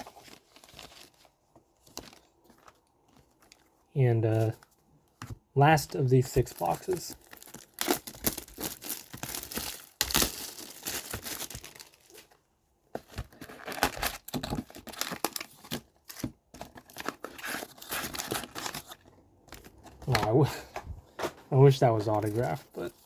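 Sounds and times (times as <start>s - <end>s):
plastic wrapping tearing and crinkling: 6.5s - 12.4s, 13.2s - 19.1s.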